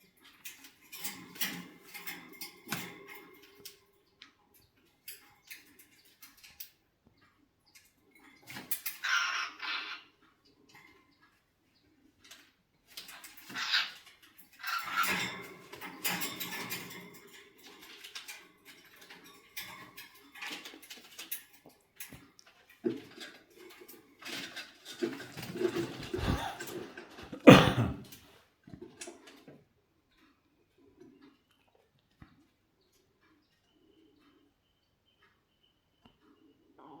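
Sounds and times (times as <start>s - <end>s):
cockatiels clucking and squeaking: 8.3s - 11.2s, 13.0s - 18.4s.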